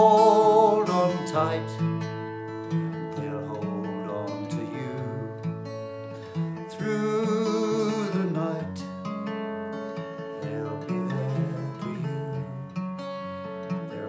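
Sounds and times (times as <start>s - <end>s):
acoustic guitar: 0.0s - 14.0s.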